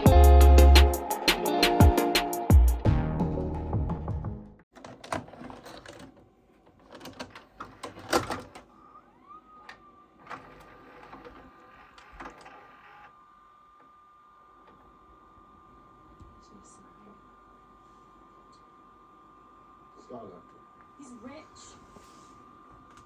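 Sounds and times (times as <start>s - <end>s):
faint high whine: 13.0s - 23.0s.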